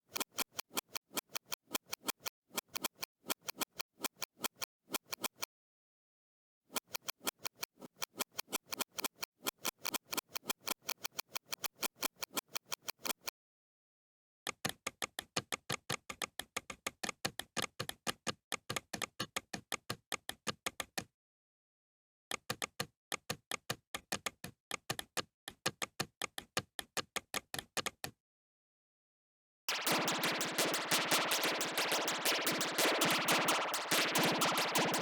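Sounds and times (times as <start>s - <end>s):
rapid mouse clicks: 0.0s - 5.5s, 6.7s - 13.3s, 29.7s - 35.0s.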